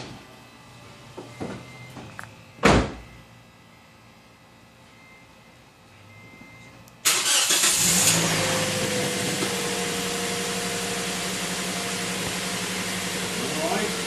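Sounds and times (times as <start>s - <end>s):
car engine starting and idling: 6.9s - 14.0s.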